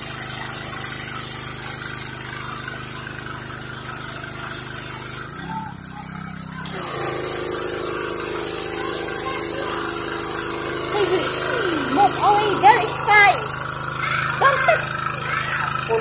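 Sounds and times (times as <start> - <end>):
pressure washer motor: 0.0 - 16.0
water spray hissing: 6.7 - 16.0.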